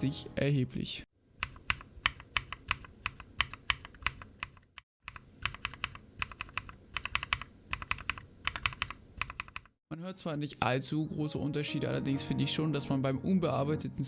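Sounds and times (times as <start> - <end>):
mechanical keyboard typing: 1.4 - 9.8.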